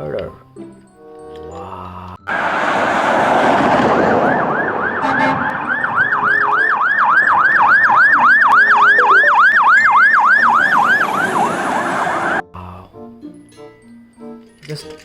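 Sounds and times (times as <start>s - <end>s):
electronic siren yelping: 2.3s - 12.4s
rushing noise: 2.3s - 12.4s.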